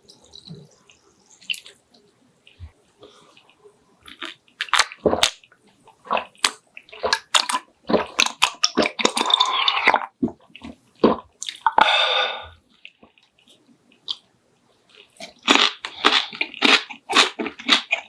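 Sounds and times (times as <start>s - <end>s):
wet chewing and smacks: 0.0s - 2.8s, 14.9s - 18.0s.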